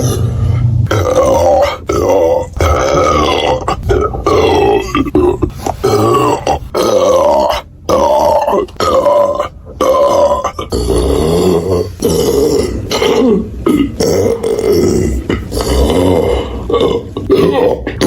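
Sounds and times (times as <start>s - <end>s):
woman belching loudly: 0.9s - 18.0s.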